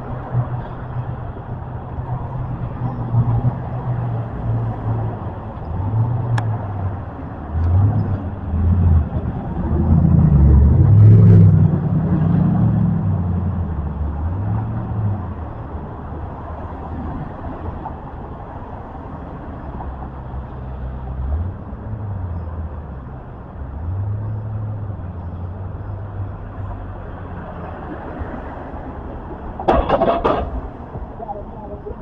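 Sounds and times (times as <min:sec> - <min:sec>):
street noise: 0:00.0 - 0:32.0
vehicle engine revving: 0:05.7 - 0:15.3.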